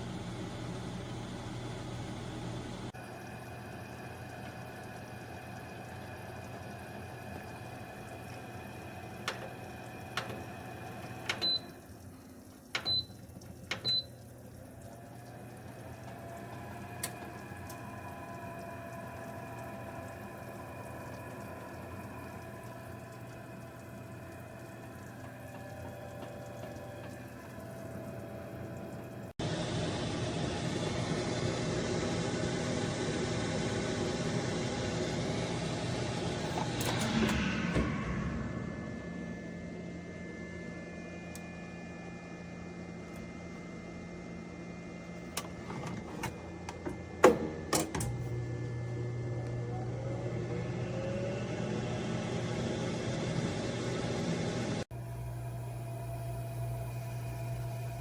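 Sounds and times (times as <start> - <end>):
oven humming: 0.0 - 58.0
oven clicks: 7.4 - 14.4, 45.3 - 48.8.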